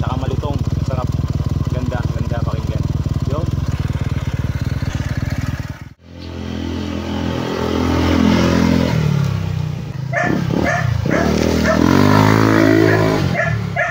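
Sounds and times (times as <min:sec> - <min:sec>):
scooter engine running: 0:00.0 - 0:13.9
dog barking: 0:10.1 - 0:13.9.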